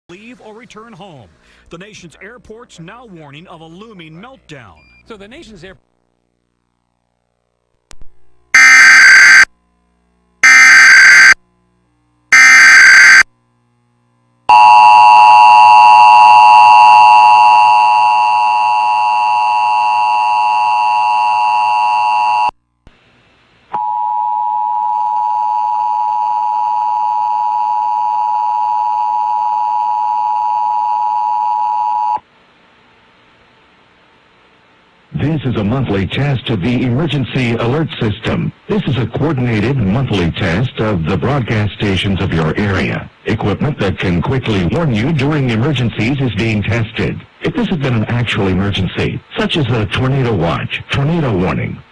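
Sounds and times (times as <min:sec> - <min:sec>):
two-tone attention signal: 0:08.6 - 0:09.5, 0:10.4 - 0:11.4, 0:12.3 - 0:13.2
raspy digital data bursts: 0:10.4 - 0:11.4.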